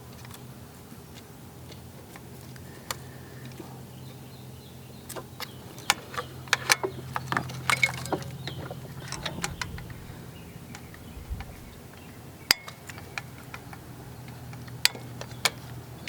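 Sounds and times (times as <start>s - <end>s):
steady low hum: 0.0s - 16.0s
metal tools clinking: 5.8s - 11.0s.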